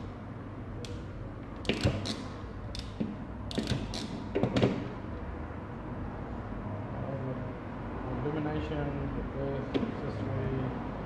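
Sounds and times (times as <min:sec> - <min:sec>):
wiring harness clicks and rustles: 0:01.6 - 0:04.8.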